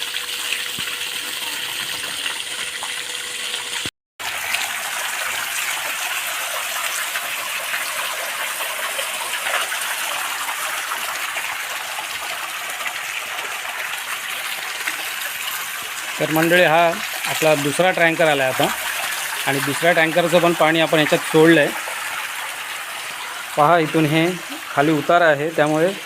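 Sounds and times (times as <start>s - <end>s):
water gushing into pool: 0.0s - 26.0s.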